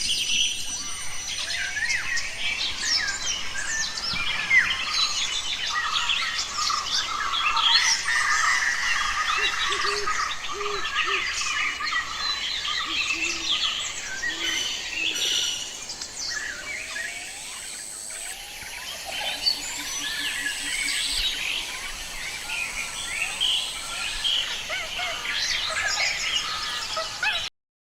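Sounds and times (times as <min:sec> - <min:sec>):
forest birds chirping: 0:00.0 - 0:27.5.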